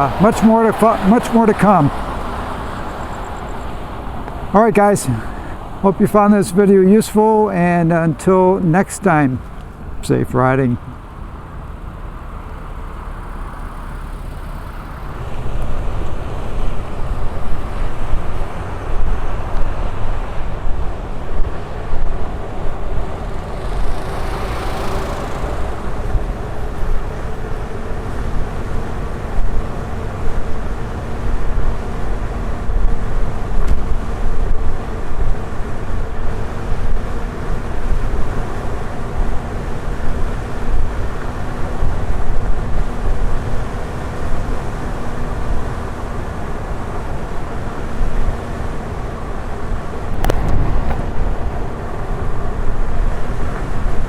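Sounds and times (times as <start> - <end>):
low road rumble: 0.0 - 54.0
wind buffeting microphone: 15.2 - 44.6, 48.0 - 54.0
brief rushing swell: 22.8 - 27.2.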